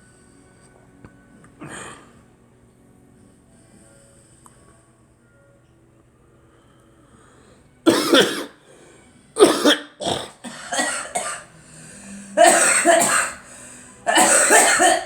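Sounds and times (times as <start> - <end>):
girl coughing: 7.9 - 8.6, 9.4 - 11.5, 12.4 - 13.4, 14.1 - 15.0.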